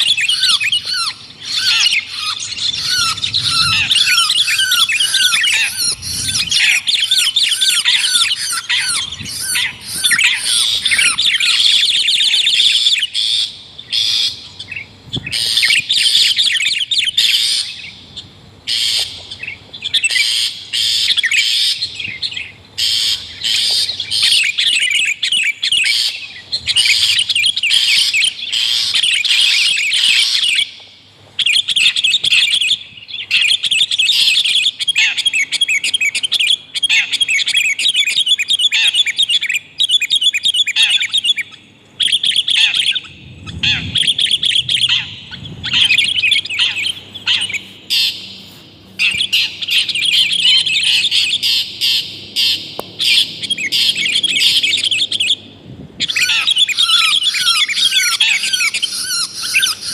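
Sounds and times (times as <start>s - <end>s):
birds chattering and trilling: 0.0s - 59.9s.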